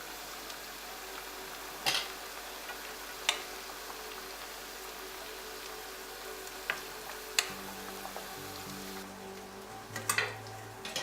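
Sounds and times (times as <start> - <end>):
water boiling in a pot: 0.0 - 11.0.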